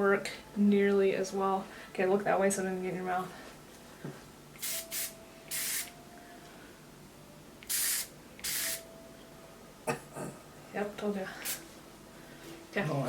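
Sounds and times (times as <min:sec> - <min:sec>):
short spray bursts: 0:04.6 - 0:05.9, 0:07.6 - 0:08.8, 0:11.4 - 0:11.6.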